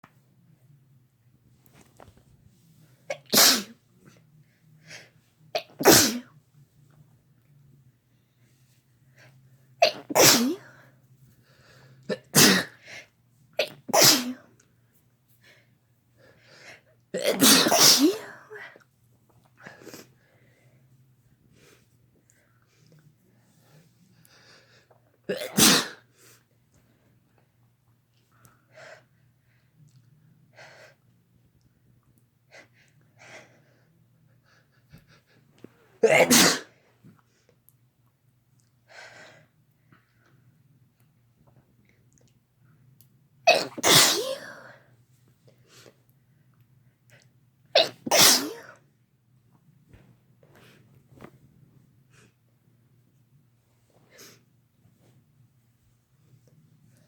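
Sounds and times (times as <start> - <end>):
person sneezing: 3.1 - 3.8, 5.6 - 6.3, 9.8 - 10.7, 12.1 - 12.8, 13.6 - 14.4, 17.2 - 18.5, 25.3 - 26.0, 36.0 - 36.8, 43.5 - 44.8, 47.8 - 48.8.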